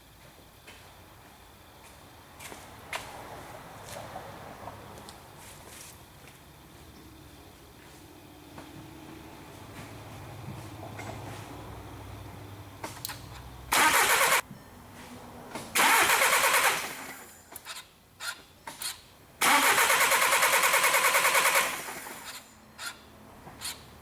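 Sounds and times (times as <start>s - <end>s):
starter cranking diesel engine: 13.0s - 14.4s, 15.8s - 17.8s, 19.4s - 23.0s.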